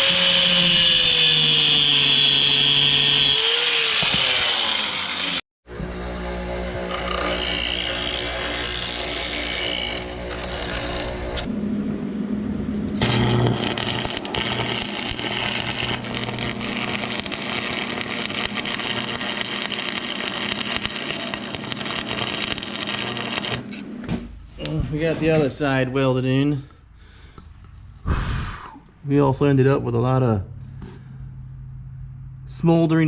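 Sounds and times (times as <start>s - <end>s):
power tools running: 0.0s - 11.5s, 13.0s - 23.8s.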